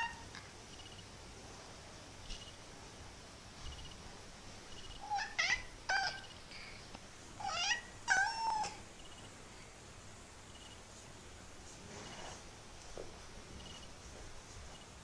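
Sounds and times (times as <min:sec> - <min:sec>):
kitten meowing: 0:05.0 - 0:06.3, 0:07.4 - 0:08.8.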